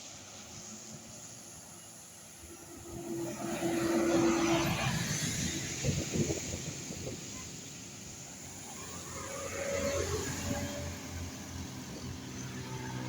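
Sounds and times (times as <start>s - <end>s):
tyres hissing on wet road: 0.0s - 13.0s.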